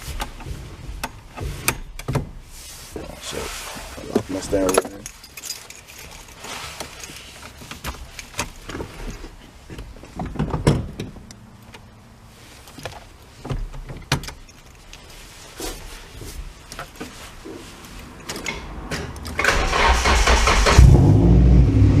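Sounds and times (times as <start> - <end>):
steering wheel clicks and knocks: 0.0 - 2.4.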